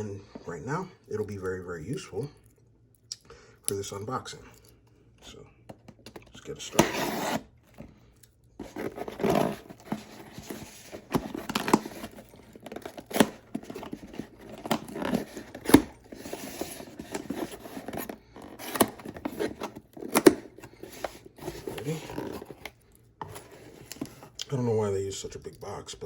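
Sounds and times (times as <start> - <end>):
knife cutting cardboard: 6.7 - 7.5, 8.6 - 24.3
tape and packaging tearing: 8.6 - 22.7
knocks and clicks of box: 8.6 - 24.2.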